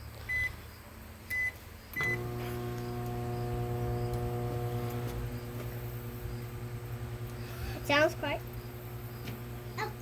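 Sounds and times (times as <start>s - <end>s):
microwave keypad beeping: 0.3s - 0.5s, 1.3s - 2.3s
microwave oven humming: 1.3s - 10.0s.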